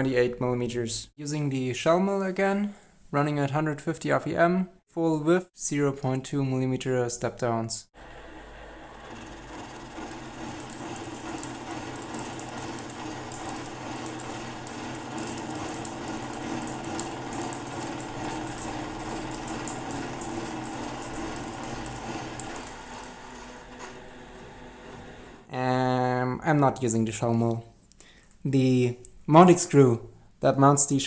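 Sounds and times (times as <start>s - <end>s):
milling machine motor hum: 8.0s - 25.5s.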